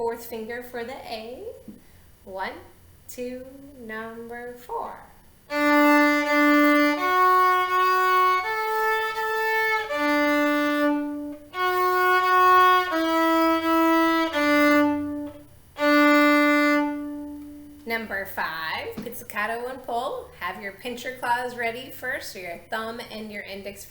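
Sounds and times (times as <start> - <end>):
solo viola bowed notes: 5.5 - 17.9.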